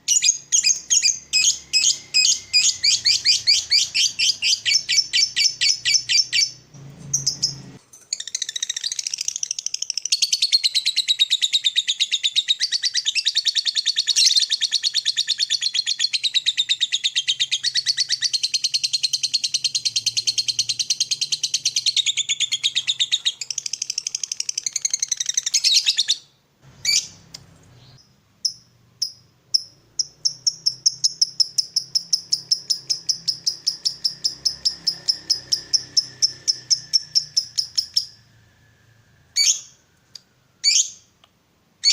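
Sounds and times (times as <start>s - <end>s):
bird chirps: 0.0s - 41.2s
lovebird chattering trill: 0.1s - 26.2s, 27.9s - 38.2s.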